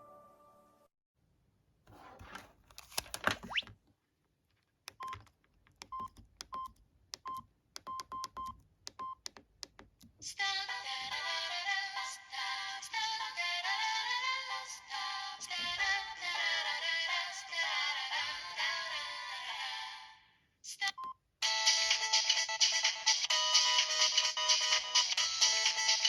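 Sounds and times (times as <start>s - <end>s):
rustling noise: 1.9s - 3.7s
phone keypad beeps: 4.9s - 5.2s, 5.9s - 9.2s
ringtone with synthetic singing: 21.4s - 26.0s.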